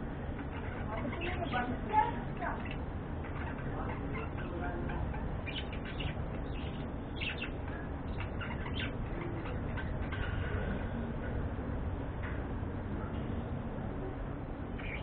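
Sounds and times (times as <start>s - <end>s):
budgerigars chirping: 0.4s - 10.2s, 14.8s - 15.0s.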